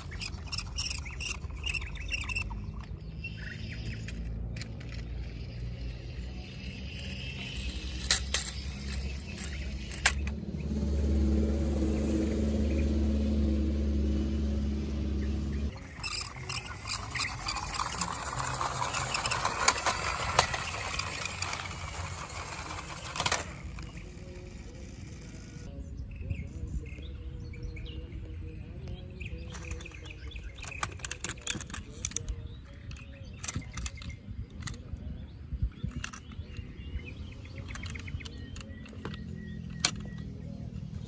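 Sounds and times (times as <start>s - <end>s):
motor humming: 0.0s - 25.7s.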